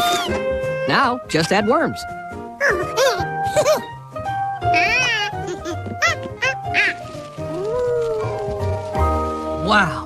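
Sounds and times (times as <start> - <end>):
light background music: 0.0 - 10.0.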